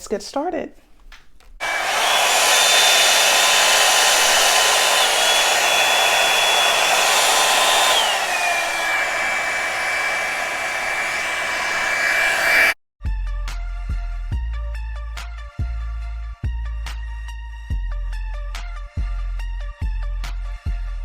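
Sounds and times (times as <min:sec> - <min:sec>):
hair dryer running: 0:01.6 - 0:12.8.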